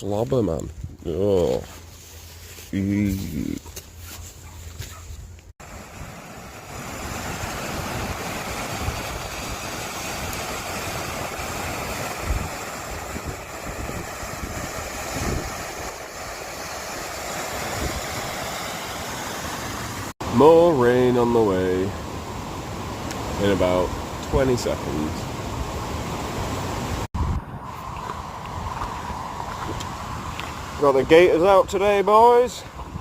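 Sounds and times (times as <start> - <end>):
wind buffeting microphone: 5.2 - 18.5, 25.1 - 33.0.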